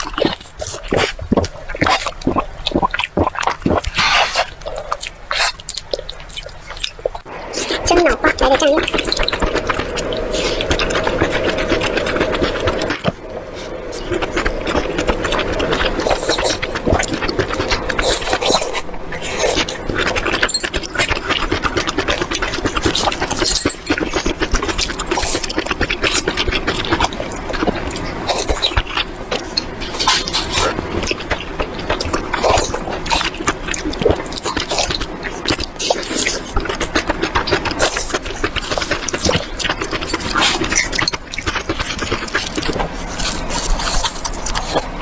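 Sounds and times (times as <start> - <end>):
steady hum: 7.1 - 33.1.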